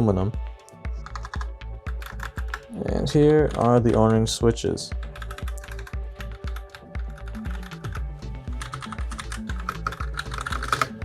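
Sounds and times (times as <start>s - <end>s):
background music with beat: 0.0s - 11.0s
soft keyboard clicks: 8.6s - 11.0s.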